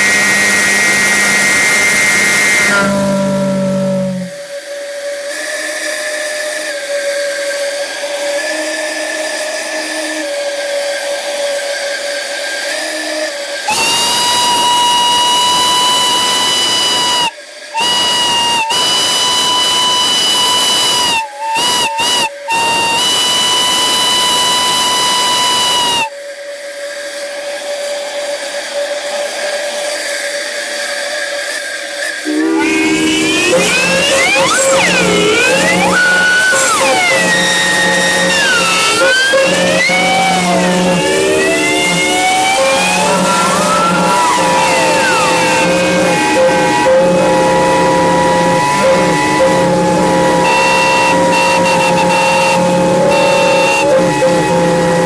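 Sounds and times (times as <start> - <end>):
sliding pitch sound: 0.0 - 4.4, 32.2 - 55.0
steam whistles blowing: 0.0 - 11.4, 12.0 - 55.0
steam hissing: 0.0 - 55.0.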